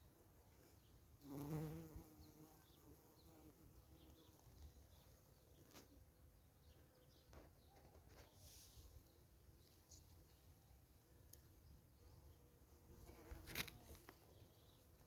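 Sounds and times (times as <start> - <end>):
insect buzzing: 1.2 - 4.1.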